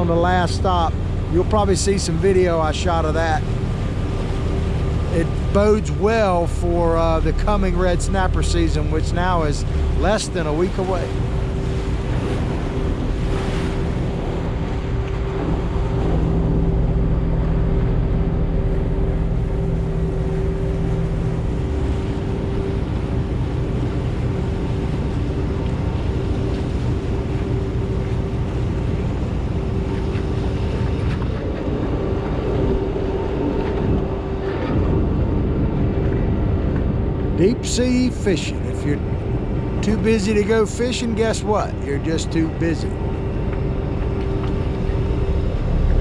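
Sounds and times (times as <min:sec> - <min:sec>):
boat engine running: 0:00.0 - 0:46.0
steady hum: 0:00.0 - 0:46.0.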